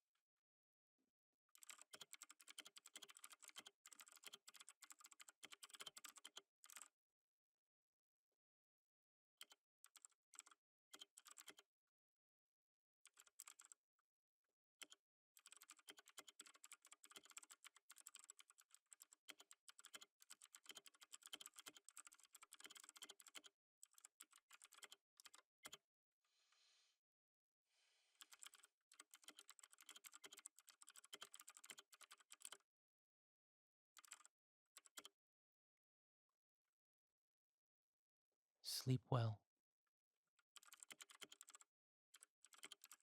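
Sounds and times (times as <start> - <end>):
typing on computer keyboard: 1.6 - 6.9, 9.4 - 11.6, 13.1 - 13.8, 14.8 - 25.8, 28.2 - 32.6, 34.0 - 35.1, 40.6 - 43.0.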